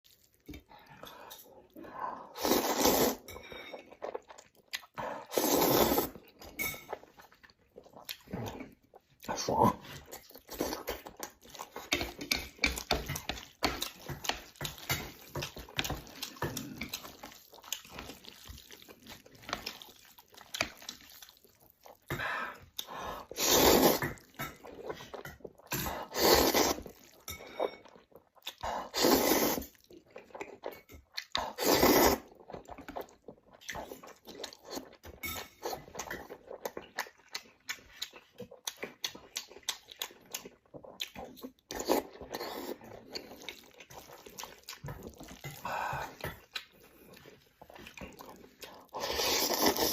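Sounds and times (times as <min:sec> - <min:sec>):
noodle slurps: 0:02.2 - 0:03.3, 0:04.8 - 0:06.4, 0:22.8 - 0:24.2, 0:25.7 - 0:27.1, 0:28.6 - 0:29.8, 0:31.3 - 0:32.4, 0:47.0 - 0:49.9
wet chewing and mouth smacks: 0:02.5 - 0:49.9.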